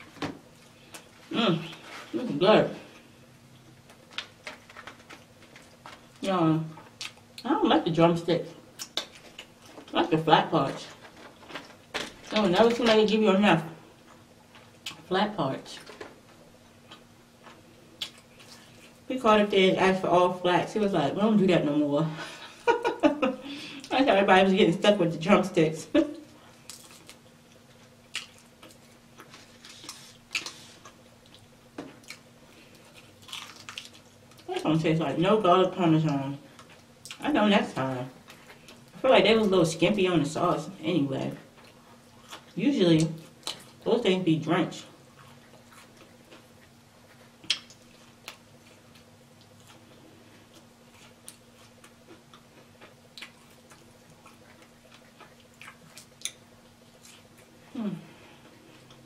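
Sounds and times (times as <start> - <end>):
faint hum: 0.0 - 59.0
person chewing wetly: 26.6 - 34.5, 45.1 - 57.5.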